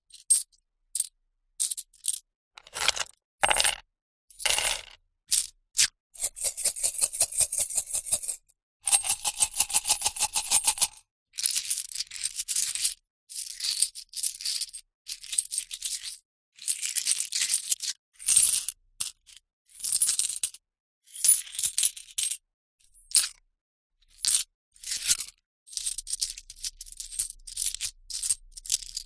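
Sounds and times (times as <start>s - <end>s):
metal coins clinking: 4.4s - 5.0s.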